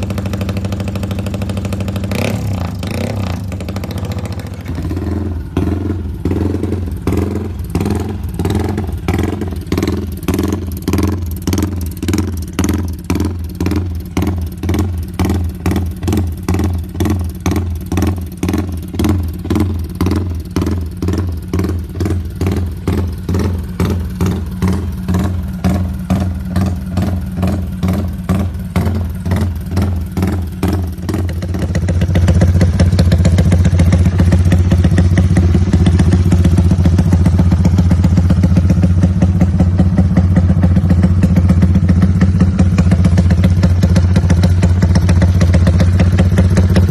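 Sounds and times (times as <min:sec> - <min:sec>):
motorcycle engine idling: 0:00.0 - 0:46.9.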